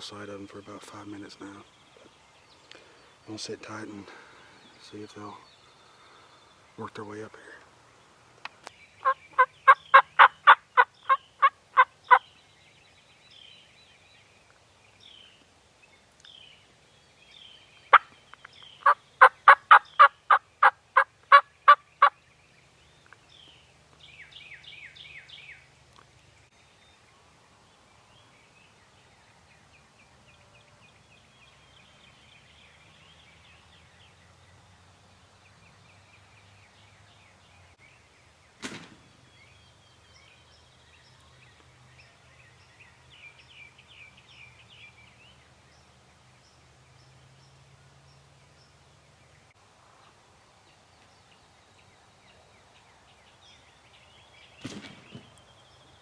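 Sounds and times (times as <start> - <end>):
faint songbird chirps: 0.0 - 56.0
wild turkey yelping: 9.0 - 12.2, 18.8 - 22.2.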